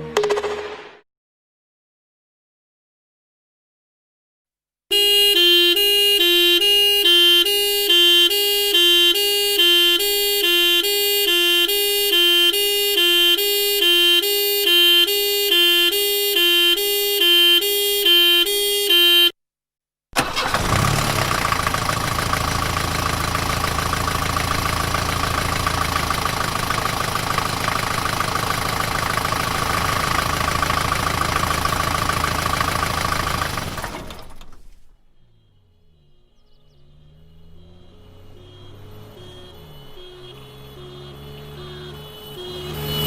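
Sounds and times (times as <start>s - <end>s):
two-tone ambulance siren: 4.9s - 19.4s, 34.6s - 43.0s
vehicle engine running: 20.3s - 34.4s.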